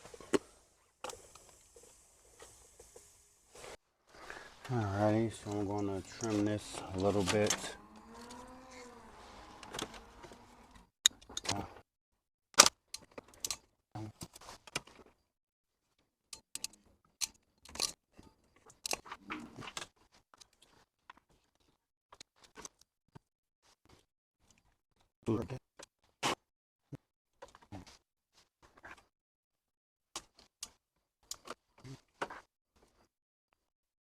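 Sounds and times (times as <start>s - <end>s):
handling and rustling noises: 0.0s - 10.6s
wire cutters snipping wire: 6.2s - 10.4s.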